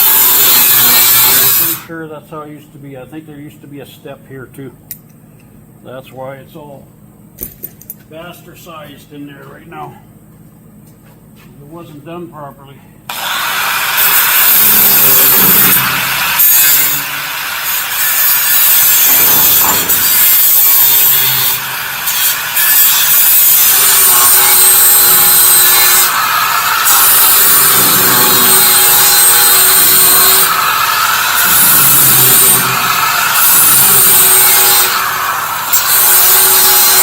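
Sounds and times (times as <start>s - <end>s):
power tool grinding sheet steel: 0.0s - 1.9s, 13.1s - 37.0s.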